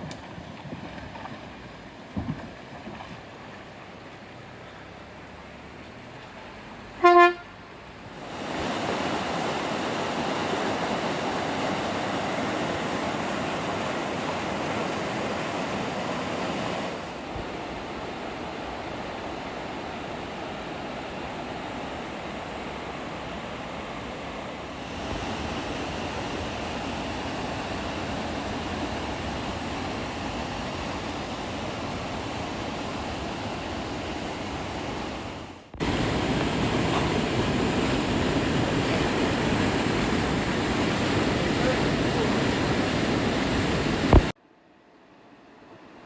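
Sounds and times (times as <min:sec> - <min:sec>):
waterfall rushing: 0:08.0 - 0:44.4.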